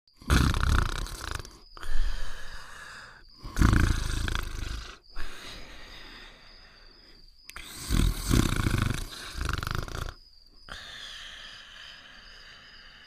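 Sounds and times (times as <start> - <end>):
cartoon snoring: 0.2 - 2.1, 3.4 - 5.4, 7.5 - 10.8.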